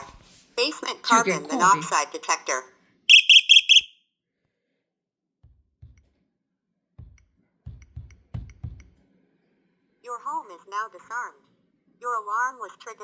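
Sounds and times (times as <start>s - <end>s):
high-pitched alarm beeps: 3.1s - 3.9s.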